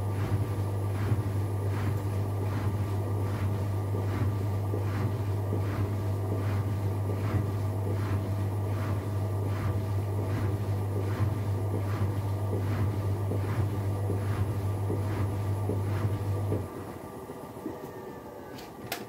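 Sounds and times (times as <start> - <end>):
washing machine drum swishing: 0.0 - 19.0
washing machine hum: 0.0 - 19.0.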